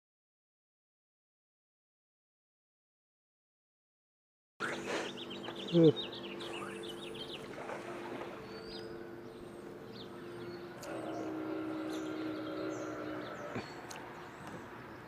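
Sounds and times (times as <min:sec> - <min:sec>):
birds chirping: 0:04.6 - 0:15.0
boat motor humming: 0:04.6 - 0:15.0.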